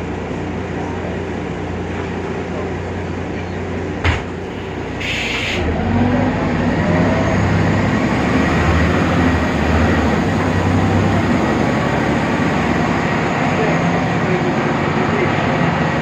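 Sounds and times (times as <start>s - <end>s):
bus diesel engine running: 0.0s - 16.0s
short air hiss: 5.0s - 5.6s.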